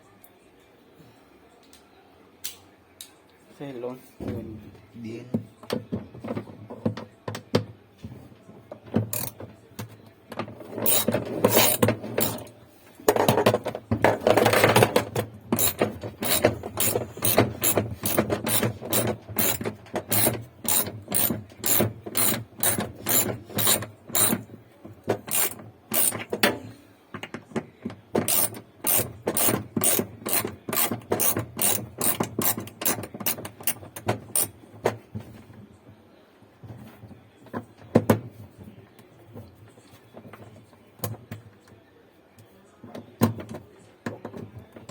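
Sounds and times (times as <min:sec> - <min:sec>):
hand ratchet clicking: 0:09.1 - 0:09.4, 0:10.8 - 0:12.5, 0:15.6 - 0:24.4, 0:25.2 - 0:26.3, 0:28.2 - 0:34.5.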